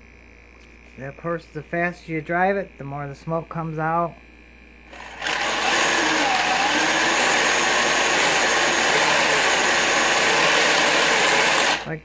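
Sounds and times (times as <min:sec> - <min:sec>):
electric motor and tracks whirring: 0:04.9 - 0:12.0.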